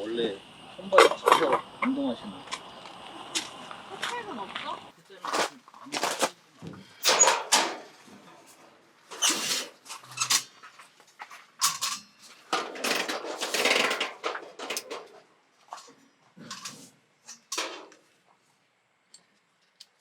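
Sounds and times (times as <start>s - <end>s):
dishes and utensils clattering: 7.0s - 7.9s, 11.6s - 15.1s.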